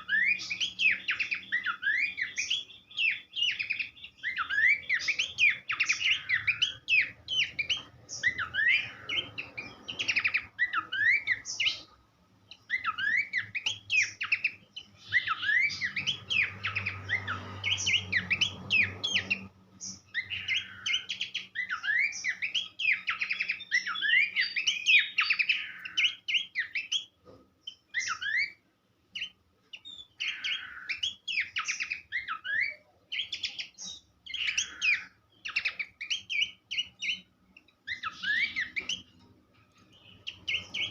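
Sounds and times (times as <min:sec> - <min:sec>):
bird singing sharp chirps: 0:00.0 - 0:11.9, 0:12.6 - 0:39.2, 0:39.8 - 0:40.9.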